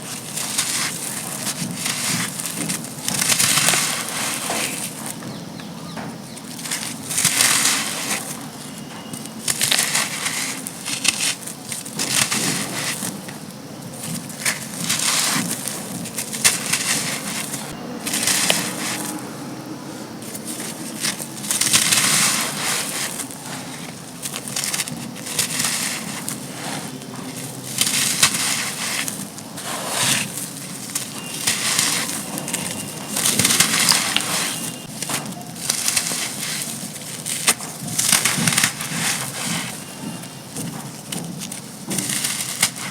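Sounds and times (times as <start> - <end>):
cement chunks being crushed: 0.0 - 42.9.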